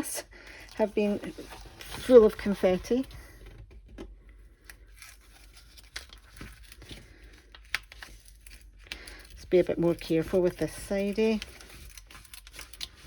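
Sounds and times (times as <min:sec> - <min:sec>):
paper and plastic crinkling: 0:00.0 - 0:13.0
packaging tearing: 0:11.0 - 0:13.0.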